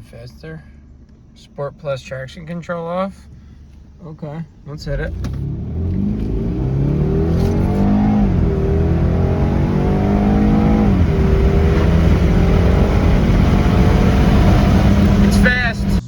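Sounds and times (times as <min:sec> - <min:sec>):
car engine accelerating hard: 0:04.8 - 0:16.0.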